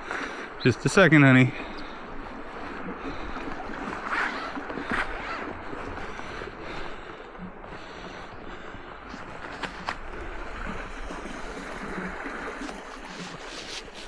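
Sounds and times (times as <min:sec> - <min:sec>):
footsteps crunching in snow: 0:09.1 - 0:14.0.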